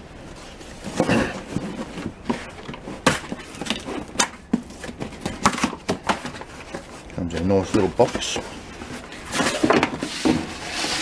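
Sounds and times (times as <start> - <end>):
packaging clicks and knocks: 0.9 - 6.8.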